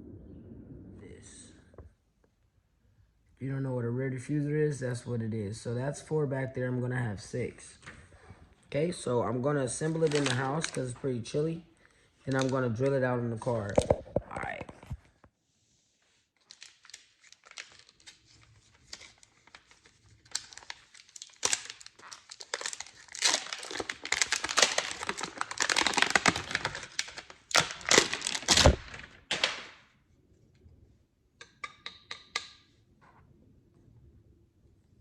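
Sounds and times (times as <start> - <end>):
packaging crinkling and tearing: 9.7 - 11.5, 12.3 - 12.9, 16.4 - 29.8.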